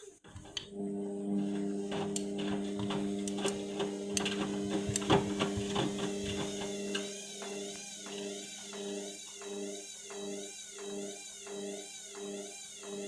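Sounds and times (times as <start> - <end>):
washing machine motor hum: 0.0 - 11.1
drum knocking and rattling: 1.9 - 7.6.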